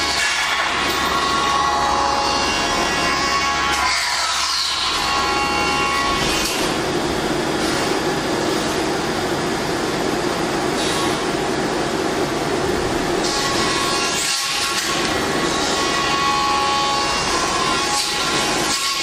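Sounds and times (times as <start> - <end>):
milling machine cutting plastic: 0.0 - 8.9, 12.7 - 19.0
whining tones: 0.0 - 9.4, 12.5 - 19.0.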